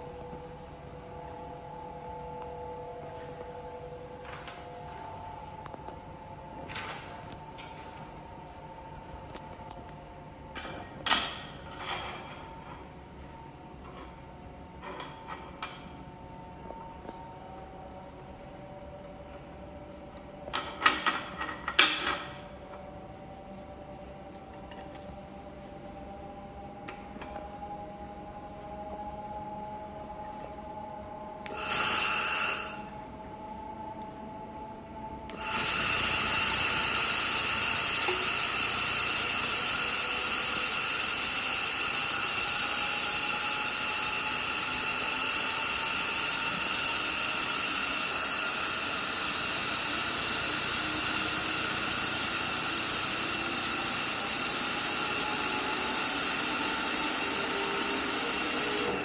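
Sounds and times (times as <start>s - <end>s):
thin whine: 0.0s - 59.0s
laser welder hissing: 31.5s - 33.0s, 35.3s - 59.0s.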